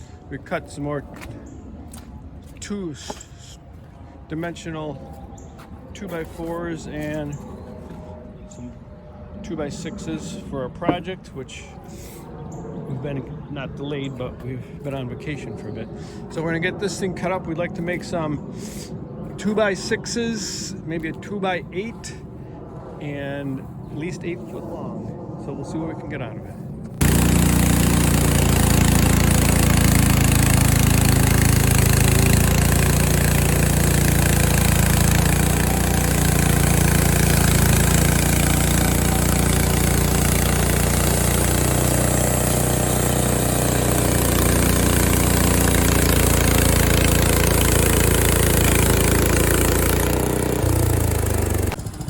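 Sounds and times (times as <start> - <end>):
bandsaw mill running: 27.0 - 52.0.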